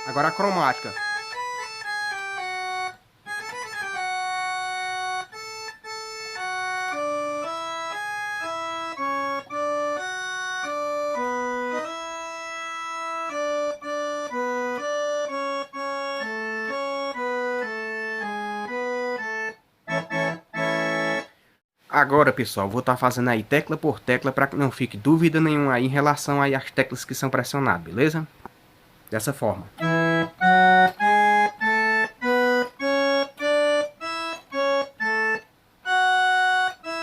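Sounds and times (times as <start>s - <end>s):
electronic keyboard melody: 0.0s - 21.4s, 29.8s - 37.0s.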